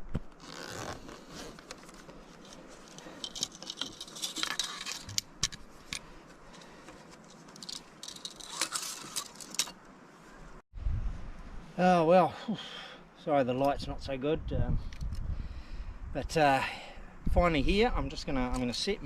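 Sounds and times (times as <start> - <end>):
rustling: 0.0 - 10.6
gear clicking and clinking: 1.6 - 9.8.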